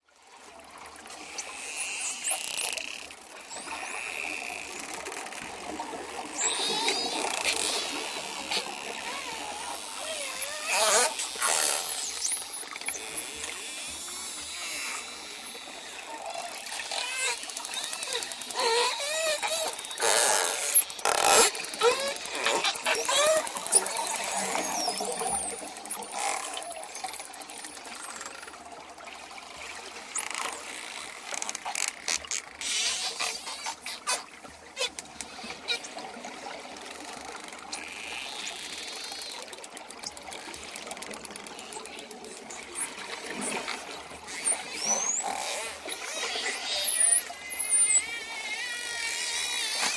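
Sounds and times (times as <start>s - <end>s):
dolphin click trains: 1.0s - 49.9s
dolphin whistles: 6.4s - 8.1s, 21.5s - 27.7s.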